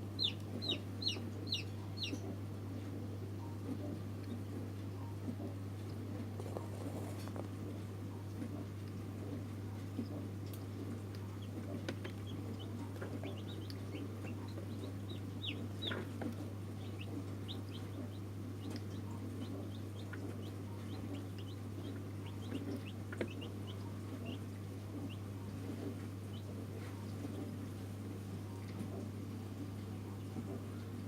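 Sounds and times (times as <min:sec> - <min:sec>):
chicks peeping: 0:00.0 - 0:05.6, 0:10.0 - 0:27.6
steady low hum: 0:00.0 - 0:31.0.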